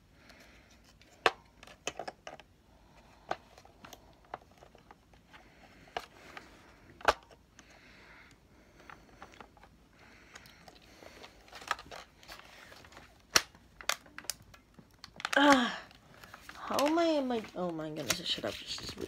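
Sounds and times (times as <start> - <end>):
plastic parts clicking and knocking: 0.7 - 7.8, 8.8 - 19.0.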